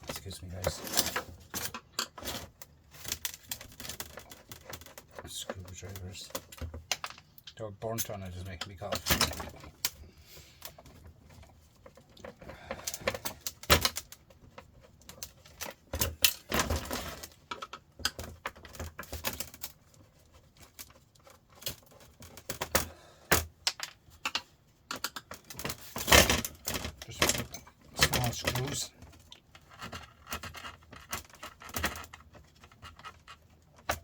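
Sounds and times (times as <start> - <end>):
metal parts clattering: 0.2 - 4.9.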